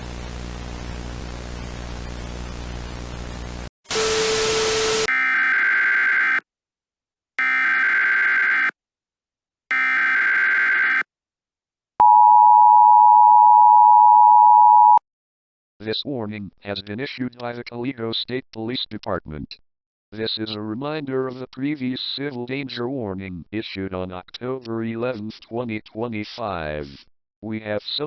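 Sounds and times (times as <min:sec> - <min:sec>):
screeching data bursts: 0:07.4 - 0:08.7, 0:09.7 - 0:11.0
two-tone attention signal: 0:12.0 - 0:15.0.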